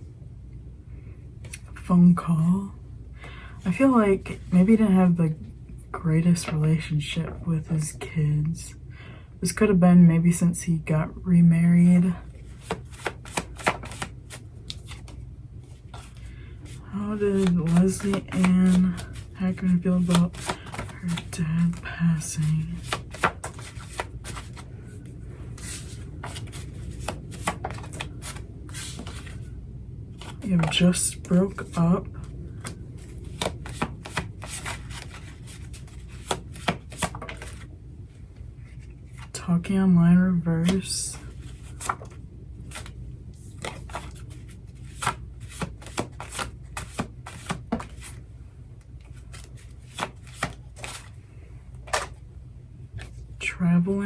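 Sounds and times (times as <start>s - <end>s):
low steady hum: 0.0s - 54.0s
cards being shuffled: 12.3s - 29.5s, 30.1s - 31.9s, 32.5s - 37.7s, 40.6s - 48.2s, 48.8s - 51.2s, 51.8s - 52.2s.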